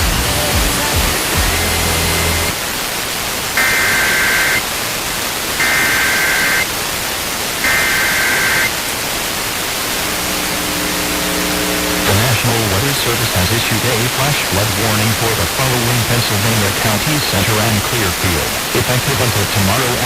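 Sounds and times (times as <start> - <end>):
radio static: 1.2 - 20.0
buzzy two-tone digital warble: 3.6 - 4.6, 5.6 - 6.7, 7.6 - 8.8, 9.9 - 13.2
low steady hum: 9.6 - 20.0.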